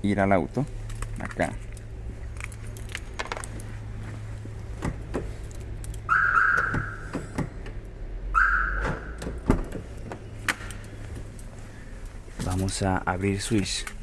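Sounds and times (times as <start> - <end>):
car warning chime: 6.1 - 7.0, 8.4 - 9.1.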